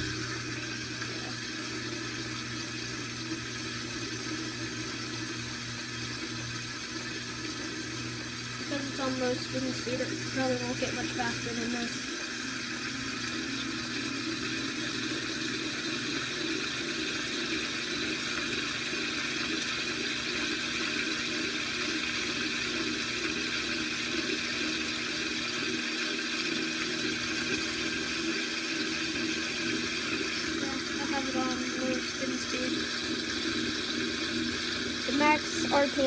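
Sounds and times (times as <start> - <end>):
washing machine spinning: 0.0 - 36.0
water rushing: 24.3 - 36.0.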